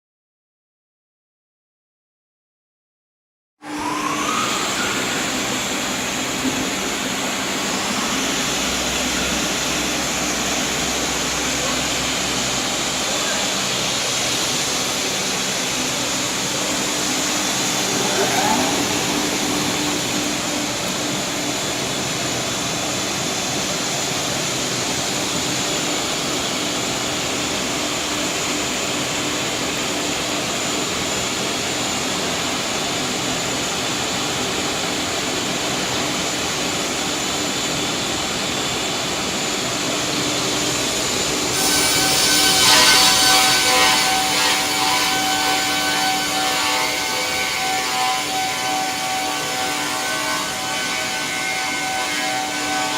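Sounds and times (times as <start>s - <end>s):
circular saw ripping timber: 41.3s - 52.9s.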